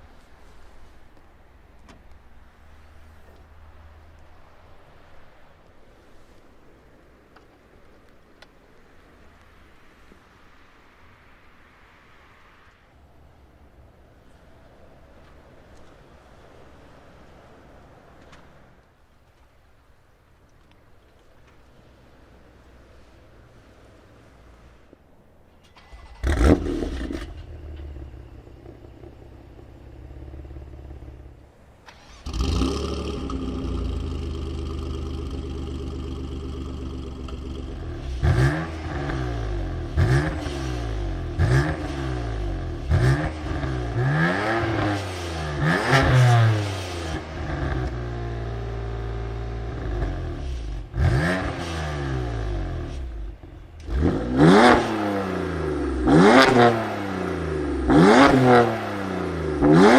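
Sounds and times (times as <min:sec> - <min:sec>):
sports car engine starting: 0:25.6 - 0:59.9
car engine idling: 0:25.7 - 0:44.0
car engine revving: 0:25.8 - 0:59.9.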